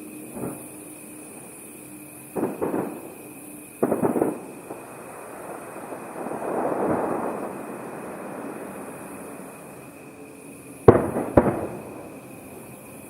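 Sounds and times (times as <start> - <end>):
firework rumble: 0.0 - 13.0
sharp firework bangs: 2.4 - 10.0, 10.8 - 13.0.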